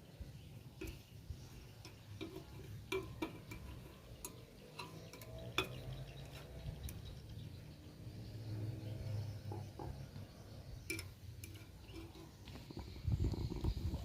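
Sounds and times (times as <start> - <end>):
utensils tapping metal cake mould: 0.7 - 7.1, 10.8 - 12.8.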